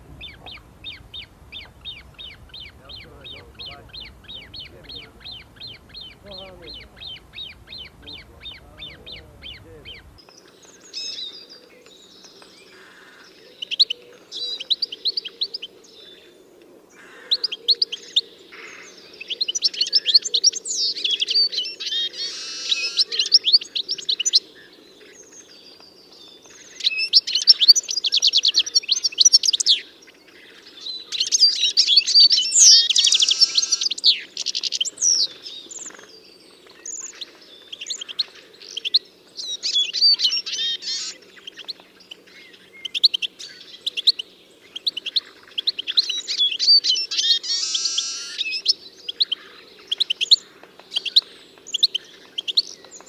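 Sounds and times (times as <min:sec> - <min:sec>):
faint low hum: 0:00.0 - 0:14.5
songbirds chirping: 0:00.0 - 0:53.0.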